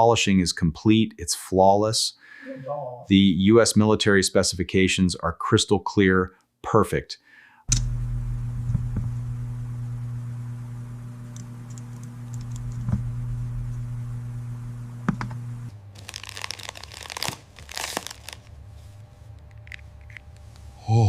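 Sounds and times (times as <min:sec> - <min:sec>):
steady low hum: 0:07.7 - 0:21.0
scratchy rustling handling noise: 0:16.0 - 0:20.7.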